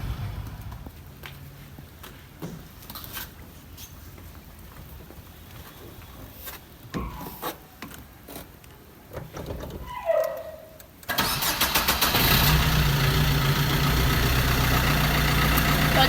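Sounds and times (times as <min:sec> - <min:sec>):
car engine idling: 0:00.0 - 0:01.2, 0:12.0 - 0:16.0
car starter cranking: 0:11.1 - 0:16.0.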